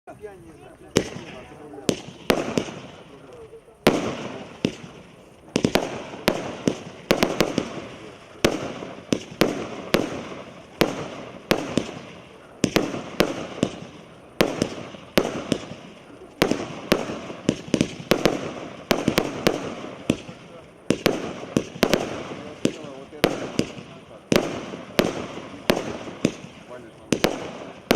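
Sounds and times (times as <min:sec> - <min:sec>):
firework launch reports: 0:00.1 - 0:27.9
firework hiss: 0:00.9 - 0:27.9.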